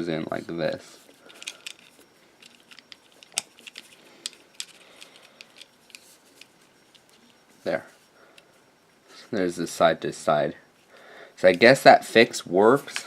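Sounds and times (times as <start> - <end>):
small plastic parts clicking: 1.3 - 7.0.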